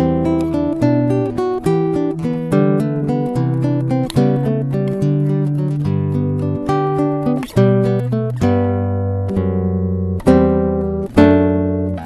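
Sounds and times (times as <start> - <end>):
acoustic guitar strummed chords: 0.0 - 12.0.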